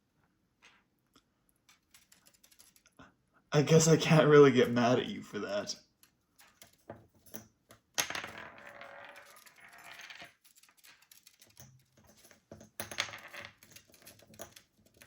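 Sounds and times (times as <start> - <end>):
toy rings clattering: 6.0 - 15.0.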